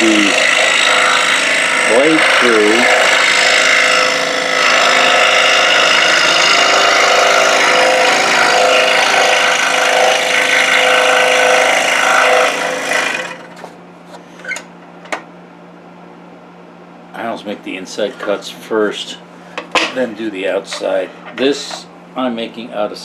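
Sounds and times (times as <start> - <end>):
scroll saw cutting wood: 0.0 - 13.5, 20.7 - 21.9.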